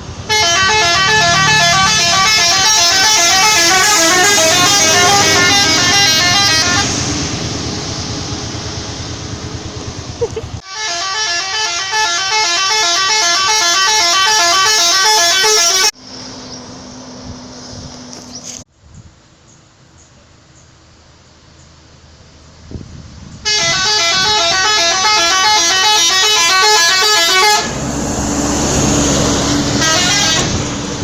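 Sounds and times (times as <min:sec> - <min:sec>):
engine rumble: 0:00.0 - 0:10.6, 0:14.5 - 0:31.0
musical bus horn tune: 0:00.2 - 0:07.4, 0:10.6 - 0:16.0, 0:23.4 - 0:27.9, 0:29.0 - 0:31.0.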